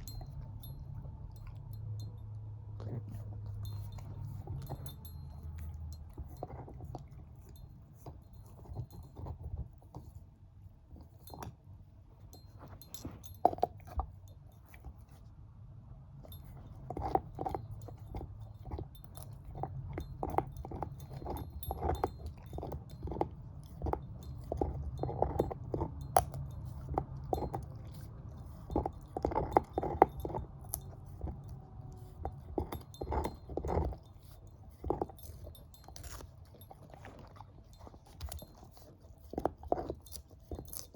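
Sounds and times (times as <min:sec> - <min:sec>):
dog chewing on a bone: 0:00.0 - 0:15.4, 0:16.1 - 0:40.9.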